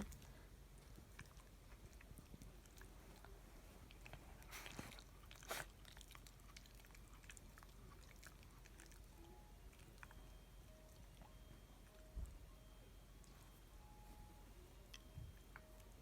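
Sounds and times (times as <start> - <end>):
dog sneezing: 4.6 - 5.7.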